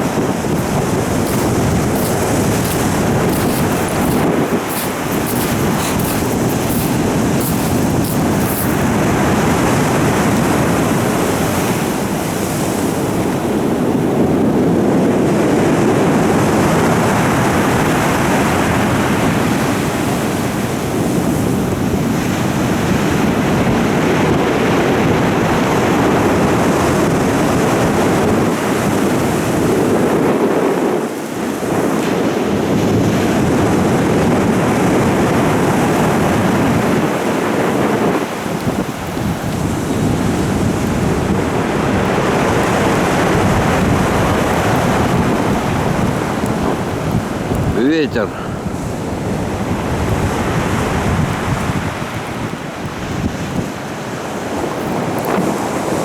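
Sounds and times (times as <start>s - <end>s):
storm surf breaking waves: 0.0s - 12.6s
wind buffeting microphone: 0.0s - 15.6s, 31.5s - 56.0s.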